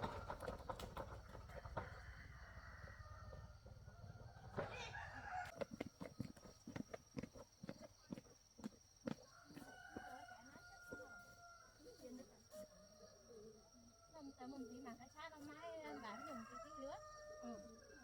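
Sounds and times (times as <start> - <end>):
faint rooster crowing: 1.4 - 6.2, 9.1 - 18.0.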